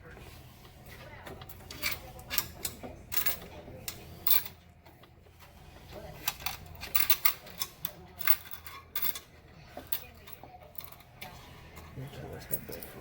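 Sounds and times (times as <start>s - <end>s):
coins clinking: 1.7s - 4.6s, 6.2s - 11.2s.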